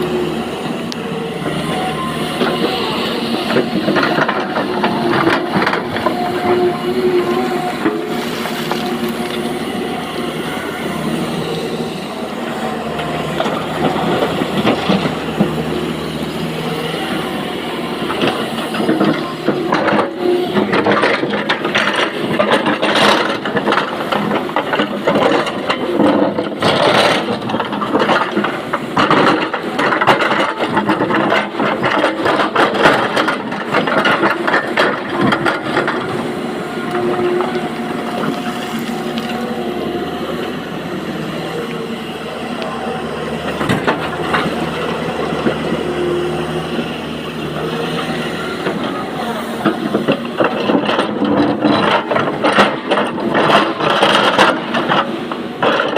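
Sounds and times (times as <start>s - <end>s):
excavator diesel engine running: 0.0s - 55.9s.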